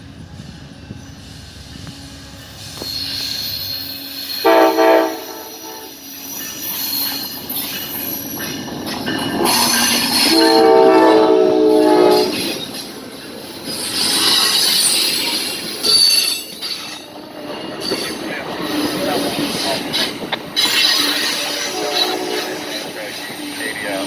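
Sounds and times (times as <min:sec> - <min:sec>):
train wheel and rail noise: 0:00.0 - 0:24.0
train horn blasts: 0:01.8 - 0:06.0, 0:09.6 - 0:12.6, 0:21.4 - 0:23.0.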